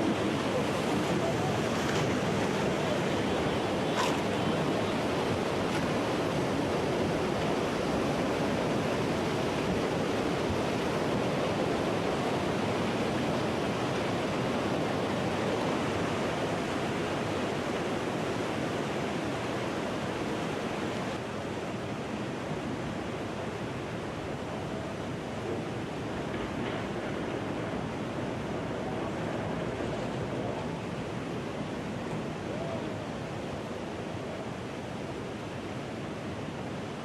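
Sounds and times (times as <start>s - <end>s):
rushing surging water: 0.0s - 26.3s.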